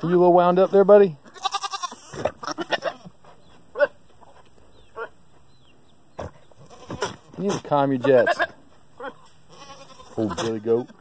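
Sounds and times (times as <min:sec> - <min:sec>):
goat sputtering calls: 0:01.2 - 0:04.0.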